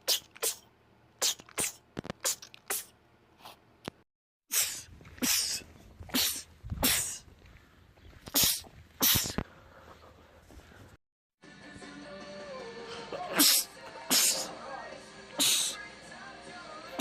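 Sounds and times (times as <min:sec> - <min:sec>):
man sneezing: 0:01.2 - 0:02.9, 0:04.5 - 0:07.2, 0:08.3 - 0:09.4, 0:13.2 - 0:14.6, 0:15.4 - 0:15.8.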